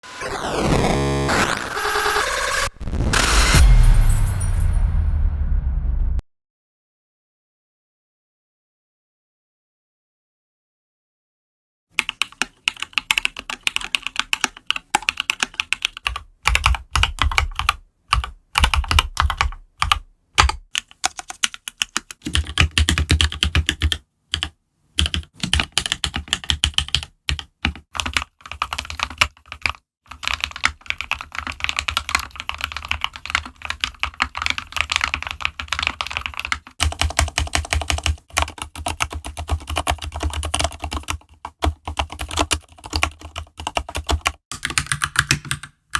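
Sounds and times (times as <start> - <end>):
computer keyboard typing: 12.0 - 45.9.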